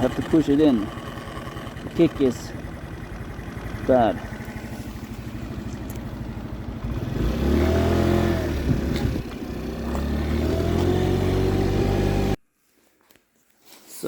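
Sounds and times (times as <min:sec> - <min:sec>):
person talking: 0:00.0 - 0:00.9, 0:01.8 - 0:02.6, 0:03.8 - 0:04.3
scooter engine idling and revving: 0:00.0 - 0:12.4.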